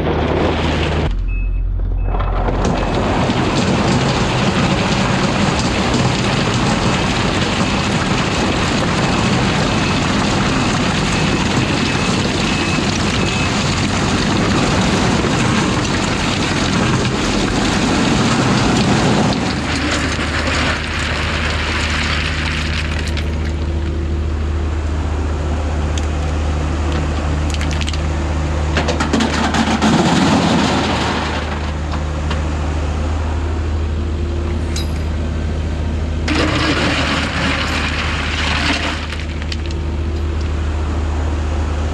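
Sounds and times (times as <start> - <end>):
diesel engine hum: 0.0 - 41.9
rock and gravel rattling: 2.1 - 24.0, 26.9 - 32.0, 36.2 - 40.5.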